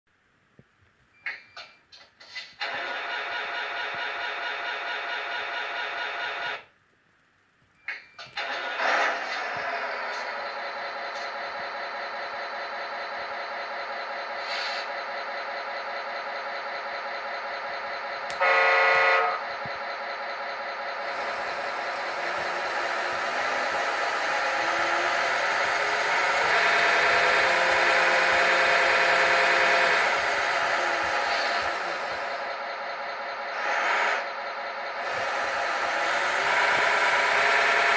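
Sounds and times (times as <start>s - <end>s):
vehicle engine running: 8.4s - 37.9s
horn blast: 18.3s - 19.5s.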